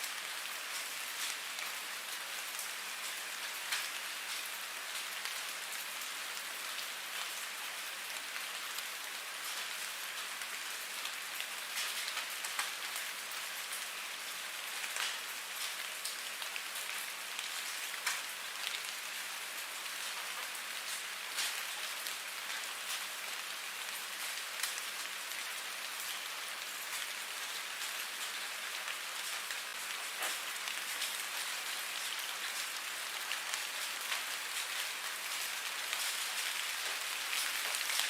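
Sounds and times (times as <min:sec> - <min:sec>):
steady rain falling: 0:00.0 - 0:38.0.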